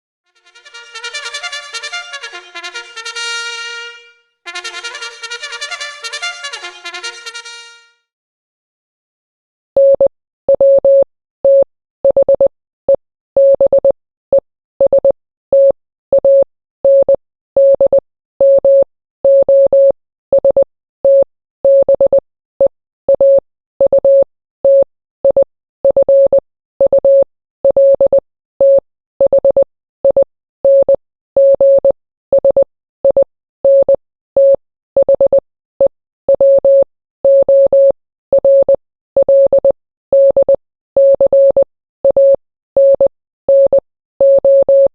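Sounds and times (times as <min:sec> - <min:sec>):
morse code beeps: 0:39.3 - 0:44.9.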